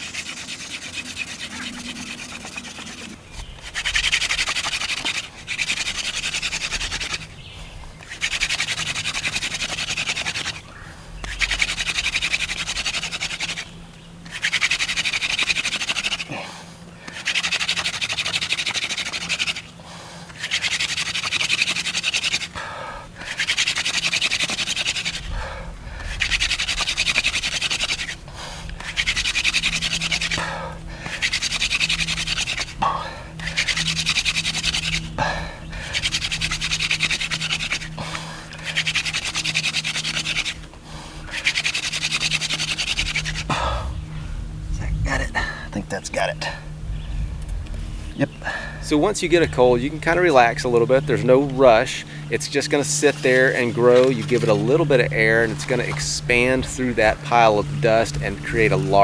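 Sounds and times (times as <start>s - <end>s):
hand drill spindle whirring hiss: 23.2s - 25.3s, 41.2s - 43.5s.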